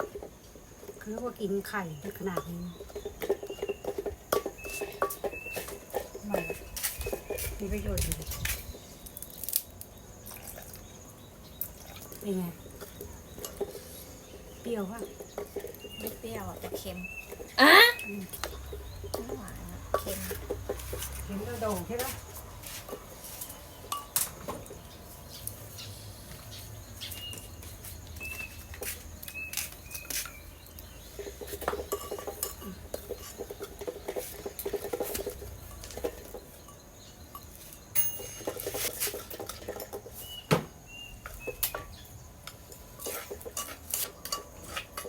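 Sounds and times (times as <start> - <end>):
cutlery clinking on plates: 2.4 - 7.5, 12.8 - 21.4, 22.0 - 24.9, 31.1 - 40.4, 41.3 - 45.0.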